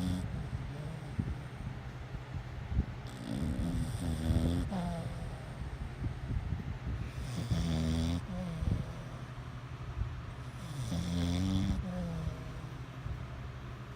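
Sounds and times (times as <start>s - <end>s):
woman snoring: 0.0s - 1.2s, 3.1s - 5.6s, 7.2s - 9.2s, 10.6s - 12.7s
quiet breathing: 0.0s - 7.6s.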